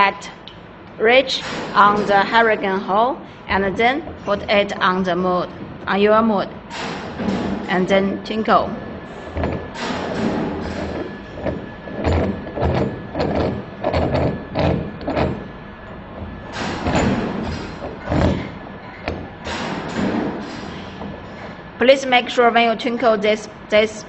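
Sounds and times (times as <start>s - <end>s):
metal knocks and clinks: 8.8s - 21.4s.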